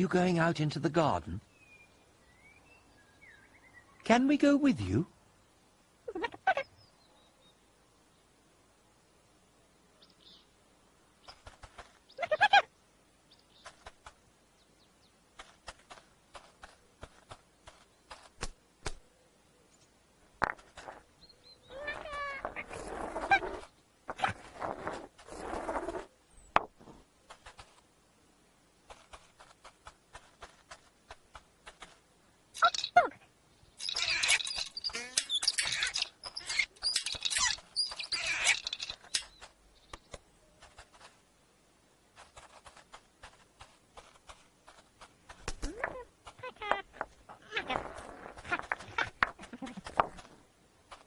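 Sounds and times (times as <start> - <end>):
squeaky warbling animal call: 6.1 - 6.7, 12.2 - 12.7, 21.7 - 24.5, 32.6 - 33.2, 33.8 - 39.3, 45.6 - 49.2
rustling: 11.2 - 12.4, 13.4 - 14.4, 15.3 - 19.1, 19.8 - 51.0.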